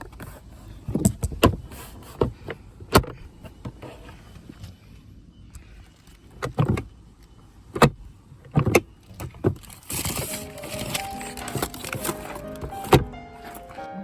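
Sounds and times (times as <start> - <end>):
music: 10.3 - 14.0.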